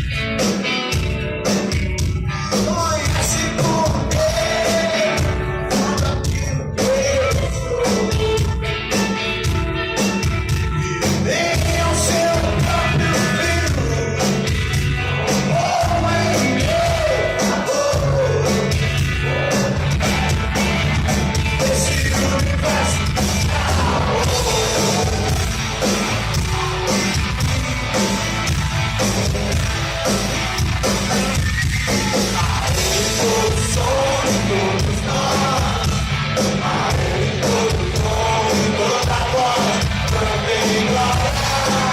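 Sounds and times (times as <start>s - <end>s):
rock band playing: 0.0s - 41.9s
person singing: 2.3s - 9.0s, 10.8s - 20.7s, 21.4s - 25.6s, 31.4s - 41.9s.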